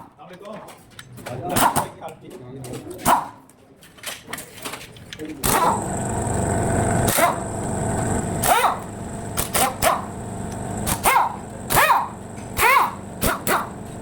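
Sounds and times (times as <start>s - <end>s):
steady low hum: 5.5s - 14.0s
dog barking: 8.4s - 8.8s, 9.6s - 10.1s, 11.0s - 13.8s.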